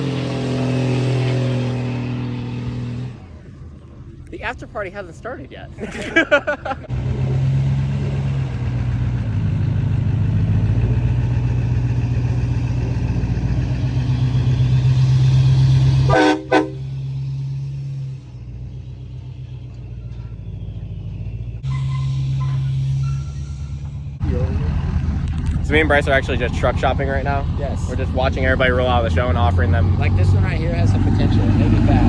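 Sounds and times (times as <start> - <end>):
engine noise: 0.0 - 32.0
higher horn toot: 16.0 - 17.0
low vehicle horn tone: 16.1 - 17.0.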